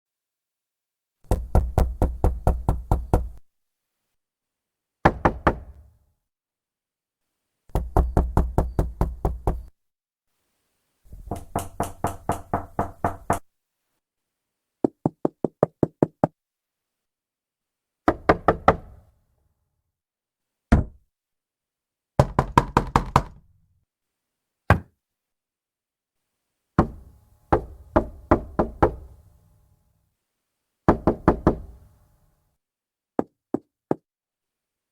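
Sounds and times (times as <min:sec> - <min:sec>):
fist knocking on wooden door: 0:01.3 - 0:03.4, 0:07.7 - 0:09.7, 0:11.1 - 0:13.5, 0:22.2 - 0:23.4.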